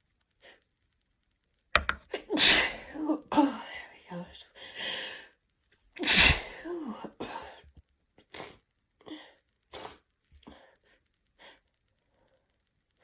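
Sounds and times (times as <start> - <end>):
woman sneezing: 2.3 - 3.0, 6.0 - 7.2.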